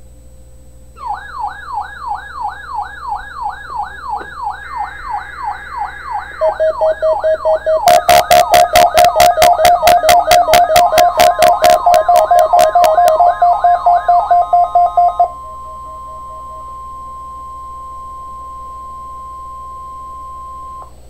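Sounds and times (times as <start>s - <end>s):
pulsing siren-like warble: 1.0s - 17.6s
steady high tone: 1.0s - 18.9s.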